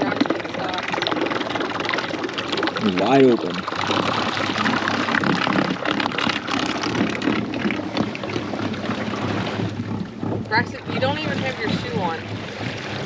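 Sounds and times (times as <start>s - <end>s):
electric trolling motor: 0.0s - 13.0s
water rushing along hull: 0.0s - 13.0s
wind buffeting microphone: 2.4s - 13.0s.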